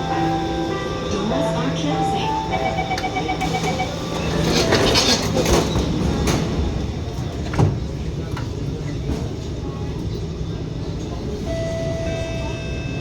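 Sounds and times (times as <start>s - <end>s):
train low hum: 0.0s - 13.0s
train running noise: 0.0s - 13.0s
door-closing beeps: 2.4s - 5.9s.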